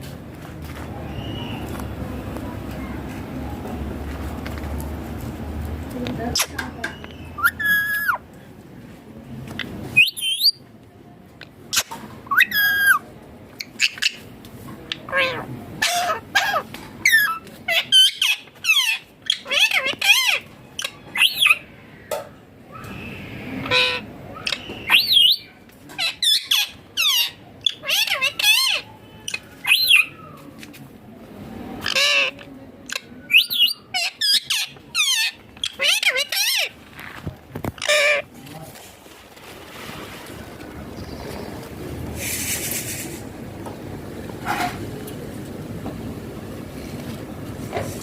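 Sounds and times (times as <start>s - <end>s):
parakeet shrill calls: 7.1s - 8.2s, 10.0s - 10.6s, 11.7s - 13.0s, 23.6s - 30.2s
parakeet squawks: 7.2s - 8.2s, 11.7s - 13.0s, 14.9s - 21.7s, 23.4s - 30.2s, 31.8s - 36.8s, 37.7s - 38.3s.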